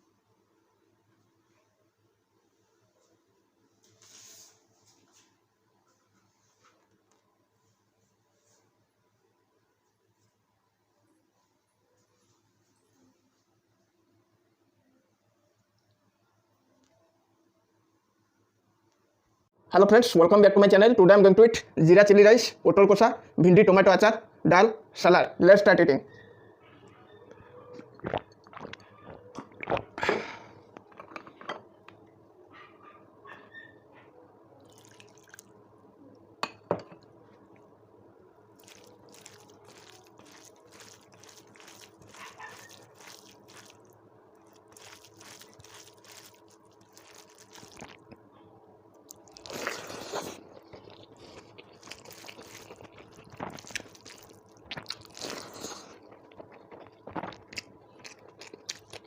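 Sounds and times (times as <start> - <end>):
person chewing and crunching food: 27.7 - 31.2, 34.6 - 35.6, 38.5 - 48.3, 49.0 - 59.0.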